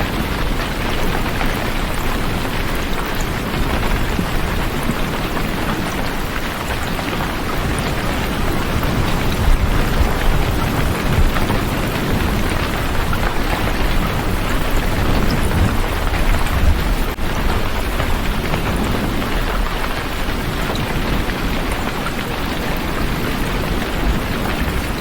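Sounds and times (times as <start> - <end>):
heavy rain falling: 0.0 - 25.0
deep continuous rumble: 6.7 - 22.0.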